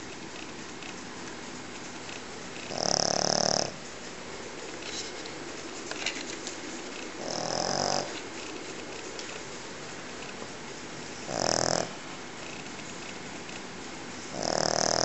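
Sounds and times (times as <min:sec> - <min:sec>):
dog snoring: 0:02.6 - 0:03.8, 0:07.2 - 0:08.5, 0:11.1 - 0:12.7, 0:14.3 - 0:15.0.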